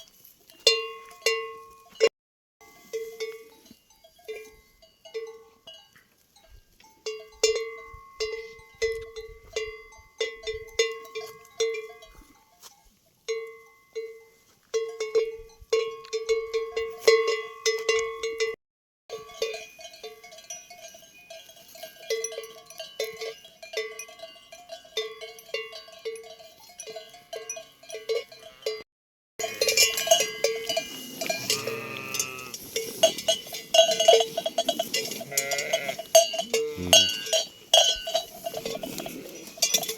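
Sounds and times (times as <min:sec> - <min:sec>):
large sheep bell clanging: 0:00.0 - 0:12.7, 0:13.3 - 0:39.9
sheep bells ringing: 0:00.0 - 0:39.9
sheep bleating: 0:31.3 - 0:32.6, 0:35.2 - 0:37.3.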